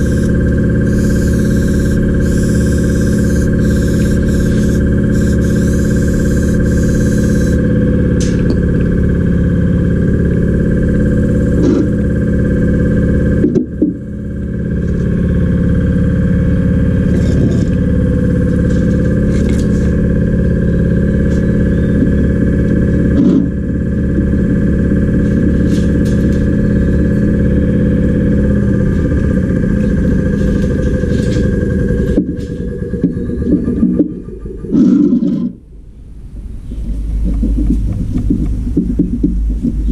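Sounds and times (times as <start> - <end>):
motor-driven machine humming: 0.0 - 39.9.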